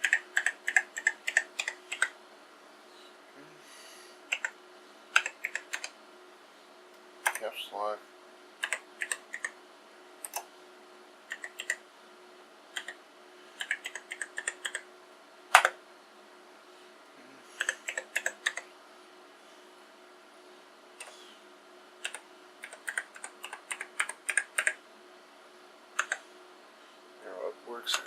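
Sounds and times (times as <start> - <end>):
keyboard keys clicking: 0.0 - 2.1, 4.3 - 4.6, 5.2 - 5.9, 7.2 - 7.5, 8.6 - 9.6, 10.2 - 10.5, 11.3 - 11.8, 12.8 - 13.0, 13.6 - 14.8, 15.6 - 15.8, 17.6 - 18.7, 22.0 - 24.8, 26.0 - 26.2.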